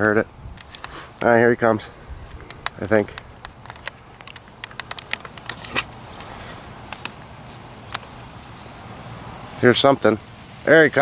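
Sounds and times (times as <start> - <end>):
sharp clicks: 0.0 - 1.3, 2.2 - 7.3, 7.9 - 8.1
distant engine hum: 0.0 - 11.0.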